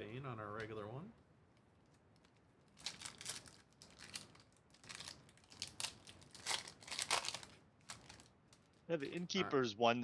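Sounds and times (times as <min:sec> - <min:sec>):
card pack wrappers crinkling and tearing: 0:02.2 - 0:09.3.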